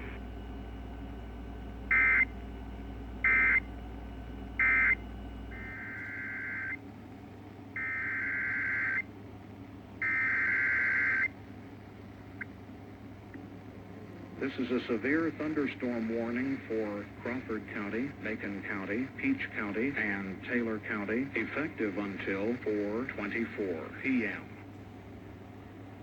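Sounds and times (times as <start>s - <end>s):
low hum: 0.0s - 26.0s.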